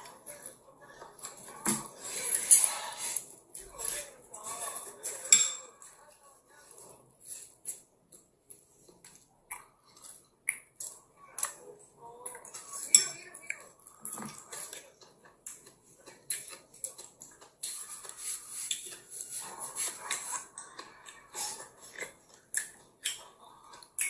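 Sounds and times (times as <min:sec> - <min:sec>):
utensils clinking on plates: 0:03.8 - 0:05.9.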